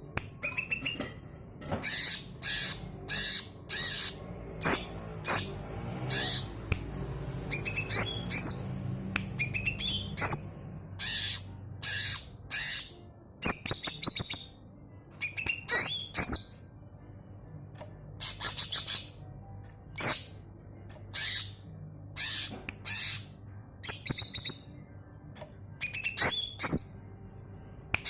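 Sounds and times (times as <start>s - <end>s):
bird singing chirps and whistles: 0.4s - 1.0s, 1.8s - 6.5s, 7.5s - 14.6s, 15.2s - 16.7s, 18.2s - 19.2s, 20.0s - 20.3s, 23.8s - 24.8s, 25.8s - 27.0s.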